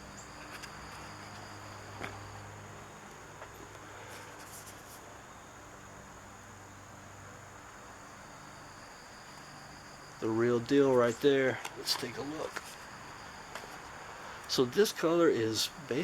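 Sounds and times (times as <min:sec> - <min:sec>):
handling noises: 0:00.0 - 0:05.0, 0:10.2 - 0:14.6
low electrical hum: 0:00.0 - 0:16.0
scratchy rustling: 0:00.3 - 0:02.3, 0:04.0 - 0:05.0, 0:10.9 - 0:13.0
high-pitched whine: 0:08.6 - 0:13.4.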